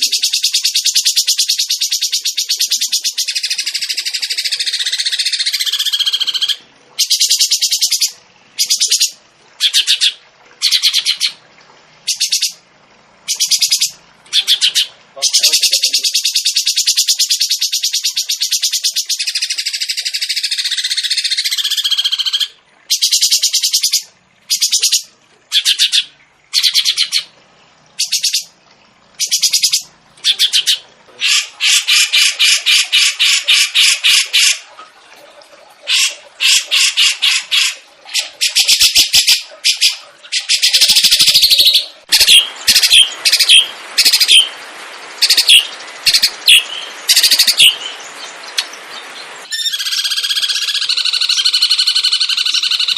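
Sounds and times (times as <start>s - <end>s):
background bird chatter: 0.0s - 11.4s, 13.2s - 28.5s, 29.2s - 34.7s, 35.8s - 52.9s
songbird fast trills: 45.2s - 48.8s.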